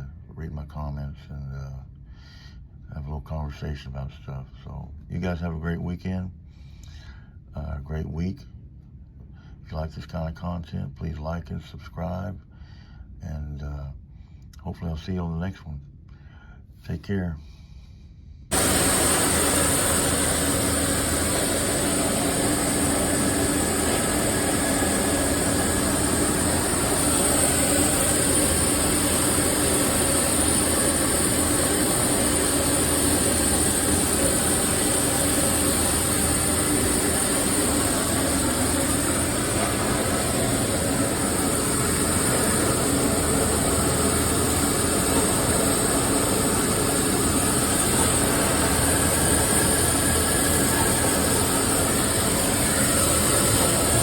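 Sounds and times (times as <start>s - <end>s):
mechanical rumble with hiss: 18.5s - 54.0s.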